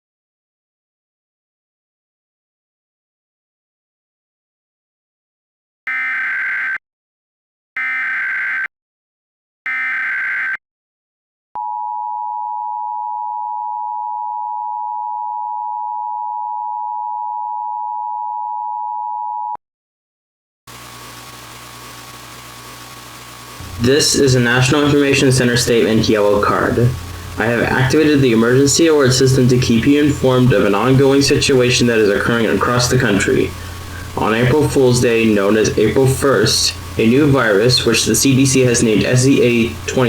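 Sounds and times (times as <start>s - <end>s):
digital data bursts: 20.7s - 40.0s
low steady hiss and hum: 20.7s - 40.0s.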